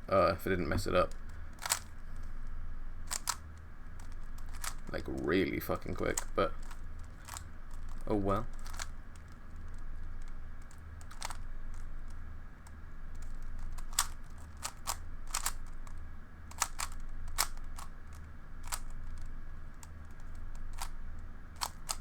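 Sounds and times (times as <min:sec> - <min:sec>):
puzzle cube clicking: 0:00.8 - 0:22.0.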